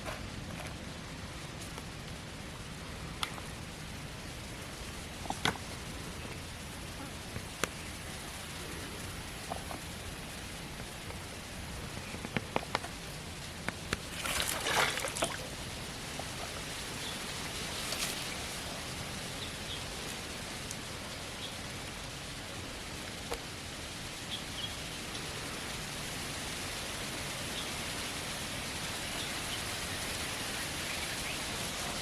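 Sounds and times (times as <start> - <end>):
steady outdoor hiss: 0.0 - 32.0
water splashing: 14.0 - 15.7.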